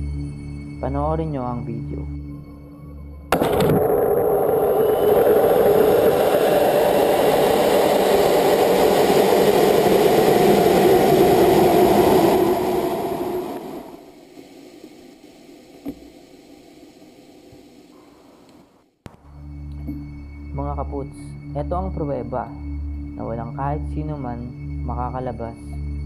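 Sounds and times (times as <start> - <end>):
rocket motor rushing: 3.3 - 17.9.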